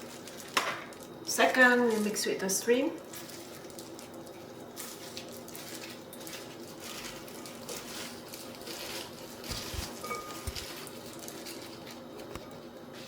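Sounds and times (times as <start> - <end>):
food mixed in a bowl: 0.0 - 13.0.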